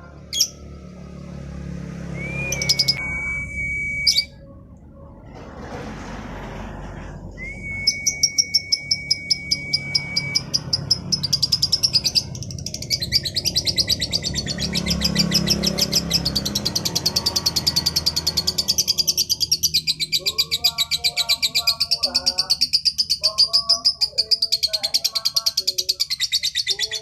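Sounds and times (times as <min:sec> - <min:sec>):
steady whistled note: 0:02.1 - 0:04.6, 0:07.3 - 0:10.6
lovebird chattering: 0:08.0 - 0:27.0.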